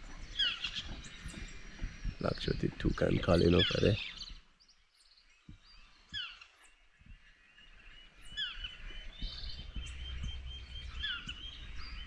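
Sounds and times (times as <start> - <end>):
small birds chirping: 0.0 - 12.0
toucan yelping calls: 8.3 - 12.0
low rumble: 9.1 - 12.0.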